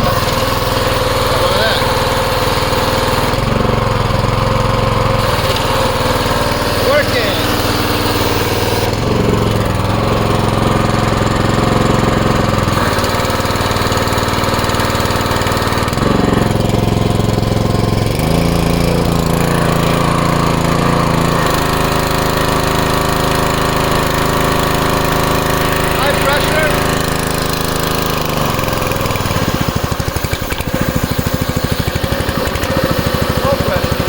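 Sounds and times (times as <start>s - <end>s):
pressure washer engine running: 0.0s - 34.0s.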